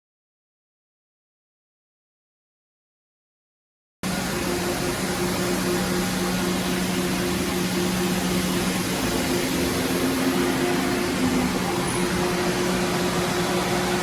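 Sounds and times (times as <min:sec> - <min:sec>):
machine hum: 0:04.0 - 0:14.0
low steady tones: 0:04.1 - 0:14.0.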